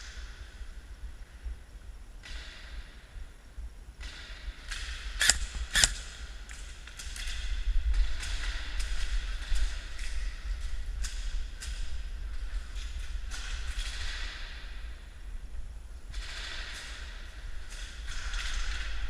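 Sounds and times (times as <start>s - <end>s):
wind rumble on microphone: 0.0s - 19.0s
airsoft gun shots: 5.2s - 6.1s.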